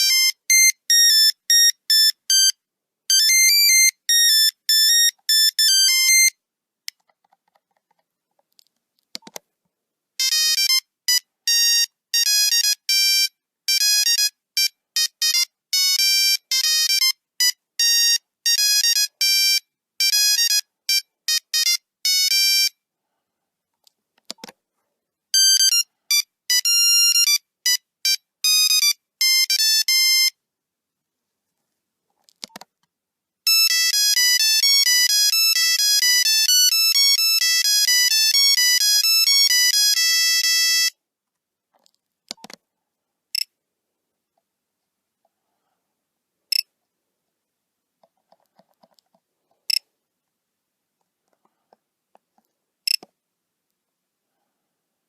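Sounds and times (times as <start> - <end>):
monophonic ringtone melody: 0.0 - 6.4, 10.2 - 22.7, 25.4 - 30.4, 33.5 - 41.0.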